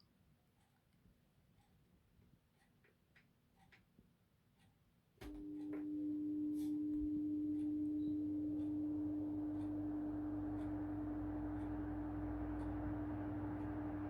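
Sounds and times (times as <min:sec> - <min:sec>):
fan motor humming: 0:05.3 - 0:14.0.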